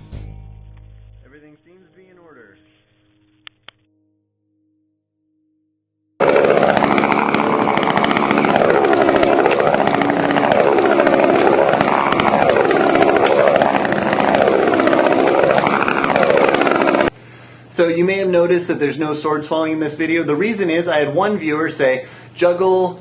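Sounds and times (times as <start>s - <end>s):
chainsaw engines revving: 6.2s - 17.1s.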